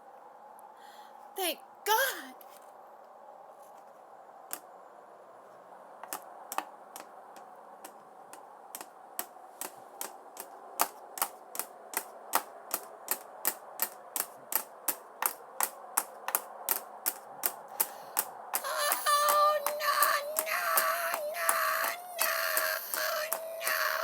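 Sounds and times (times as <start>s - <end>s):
sharp clicking knocks: 6.0s - 23.8s.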